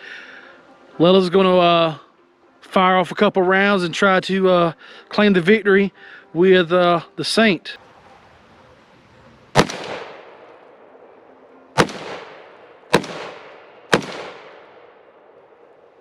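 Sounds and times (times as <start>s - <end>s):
rifle shots with rolling echo: 9.3s - 16.0s.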